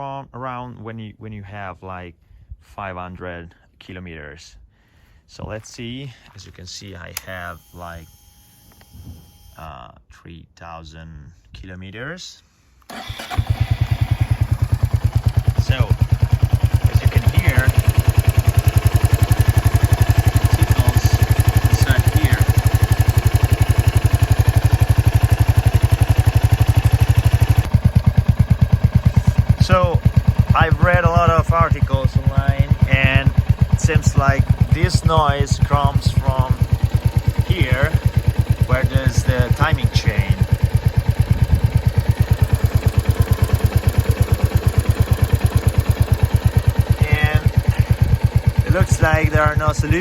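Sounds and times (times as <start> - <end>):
light engine ticking: 12.9 - 50.0
motorcycle engine running: 12.9 - 50.0.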